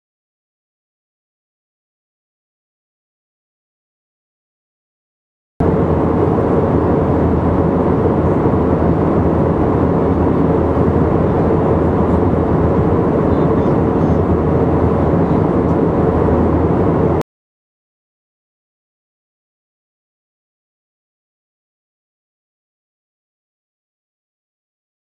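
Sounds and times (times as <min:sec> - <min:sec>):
airliner cabin engine roar: 0:05.6 - 0:17.2.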